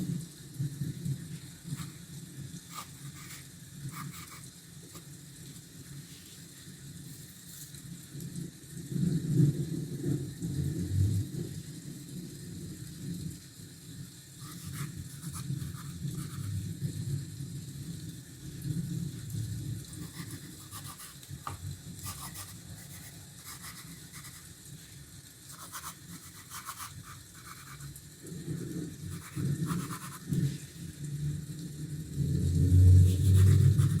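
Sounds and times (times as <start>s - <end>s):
rain: 0.0s - 34.0s
pencil scratching on paper: 2.7s - 5.0s, 14.4s - 16.5s, 20.0s - 24.5s, 25.5s - 27.9s, 29.1s - 30.3s, 33.1s - 34.0s.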